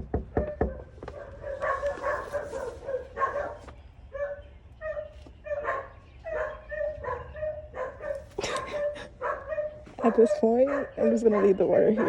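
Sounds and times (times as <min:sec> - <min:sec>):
dog barking: 0:00.4 - 0:12.0.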